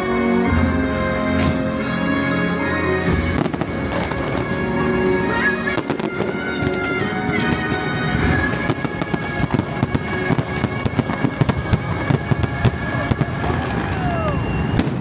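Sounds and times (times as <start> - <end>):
orchestral music chord: 0.0 - 13.6
fireworks bangs: 0.0 - 15.0
falling firework whistles: 3.0 - 15.0.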